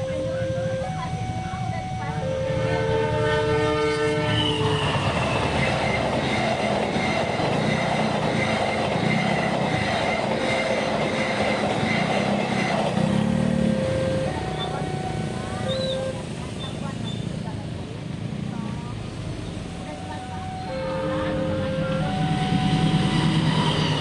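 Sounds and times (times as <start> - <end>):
crossing warning tone: 0.0 - 24.0
train rumbling past: 0.0 - 24.0
train horn chord: 2.2 - 5.3, 20.5 - 24.0.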